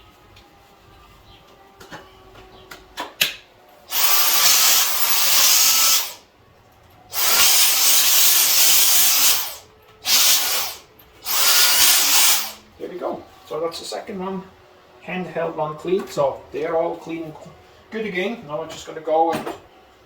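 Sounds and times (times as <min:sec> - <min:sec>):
handheld vacuum motor whine: 0:03.9 - 0:06.2, 0:07.0 - 0:12.7.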